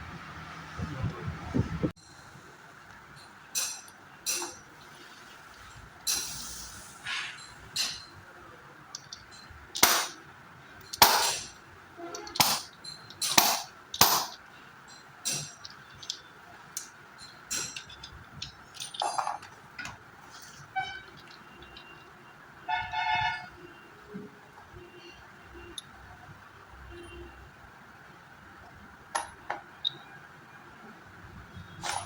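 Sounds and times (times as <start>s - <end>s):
metal parts clinking and clanking: 3.2s - 6.5s, 7.3s - 8.2s, 8.9s - 22.2s, 31.8s - 32.0s.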